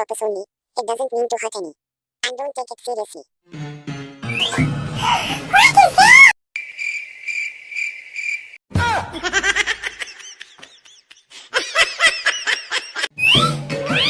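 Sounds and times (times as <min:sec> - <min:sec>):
cricket chirping: 0:06.6 - 0:08.6.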